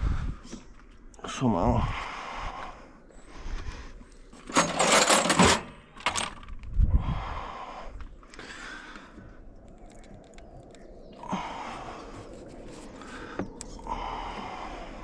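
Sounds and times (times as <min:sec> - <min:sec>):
metal tools clattering and scraping: 0:04.4 - 0:06.5.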